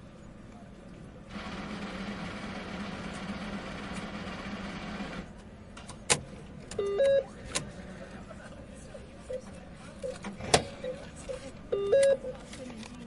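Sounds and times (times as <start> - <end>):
cash machine whirring: 1.3 - 5.3.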